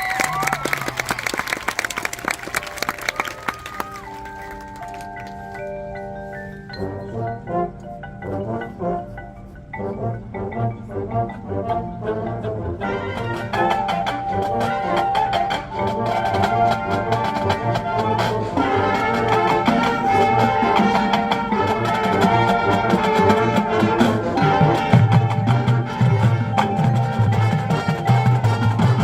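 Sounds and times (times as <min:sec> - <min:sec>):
marching percussion: 0:02.0 - 0:29.0
brass holding notes: 0:06.2 - 0:29.0.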